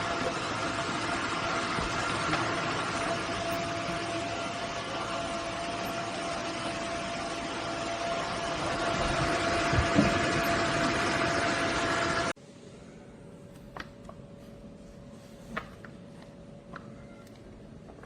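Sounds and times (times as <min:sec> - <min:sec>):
vacuum mop running: 0:00.0 - 0:12.3.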